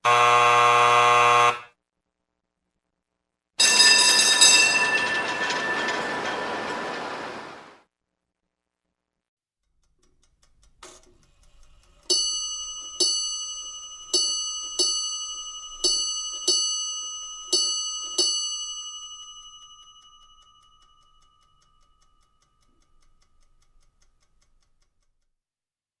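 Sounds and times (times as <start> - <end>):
doorbell ringing: 3.6 - 7.7, 12.1 - 21.4.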